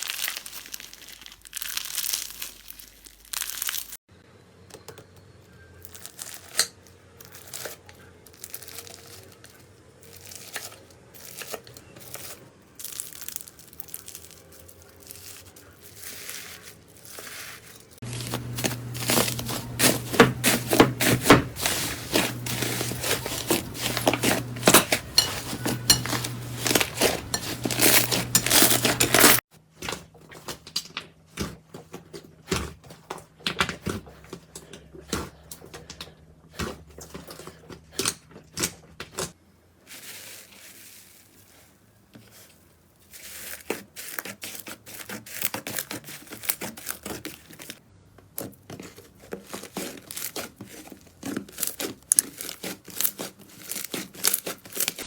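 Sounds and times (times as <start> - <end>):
slime crackling and popping: 0.0 - 4.0, 10.1 - 15.5, 51.3 - 55.0.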